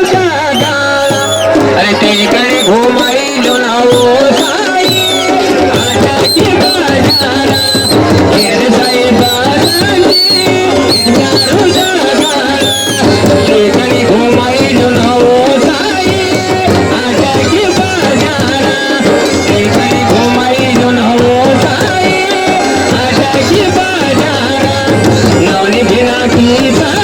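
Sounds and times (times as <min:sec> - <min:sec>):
wavering folk melody: 0:00.0 - 0:13.7
steady drum rhythm: 0:00.0 - 0:27.0.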